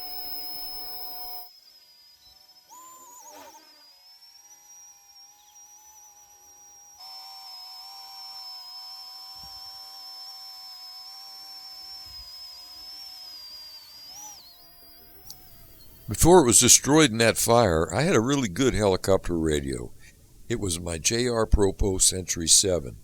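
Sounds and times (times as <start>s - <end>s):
small electric motor whining: 0.0s - 16.5s.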